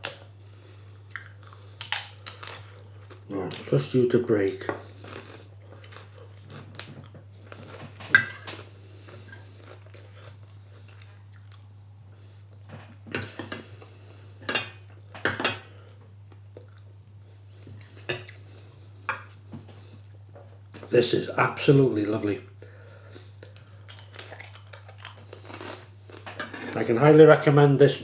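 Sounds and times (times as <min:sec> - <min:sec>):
steady low hum: 0:00.0 - 0:28.0
person chewing: 0:01.1 - 0:03.7, 0:04.8 - 0:11.7, 0:15.9 - 0:16.9, 0:23.1 - 0:26.7.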